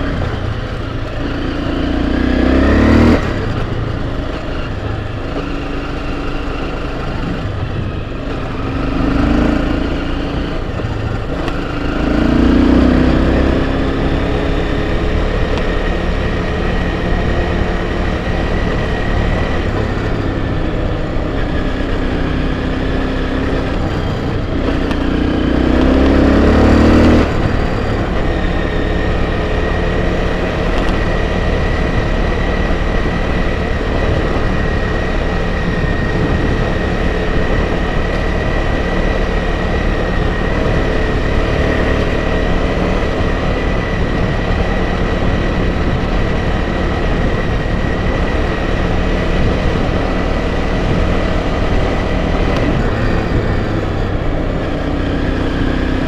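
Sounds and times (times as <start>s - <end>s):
motorcycle engine revving: 0.0s - 56.0s
wind rush: 22.9s - 55.9s.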